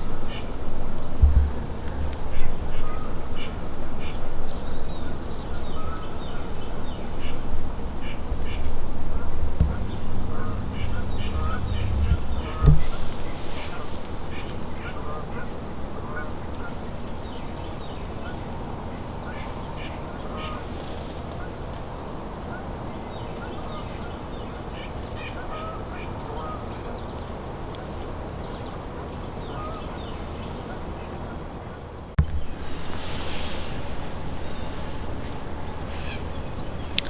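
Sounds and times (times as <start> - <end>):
geese honking: 1.8 - 4.4, 5.0 - 16.8.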